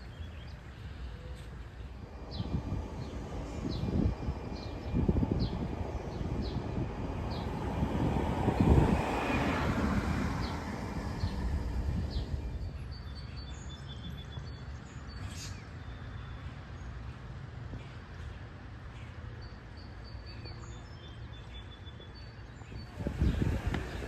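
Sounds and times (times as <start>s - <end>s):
birds chirping: 0.0s - 16.4s
vehicle rumbling past: 1.6s - 14.0s.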